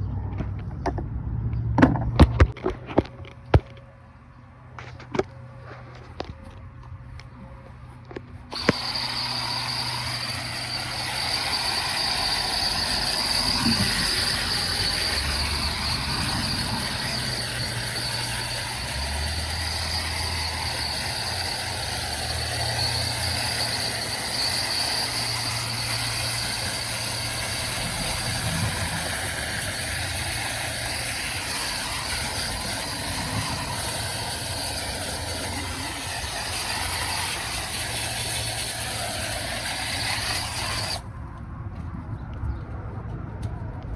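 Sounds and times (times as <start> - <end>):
vacuum cleaner running: 8.5 - 41.1.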